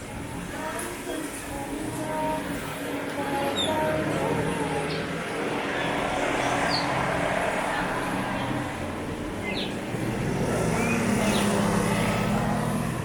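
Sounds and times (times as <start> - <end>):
traffic noise: 0.0 - 13.0
vehicle engine humming: 0.0 - 13.0
bird chirps: 9.4 - 9.8.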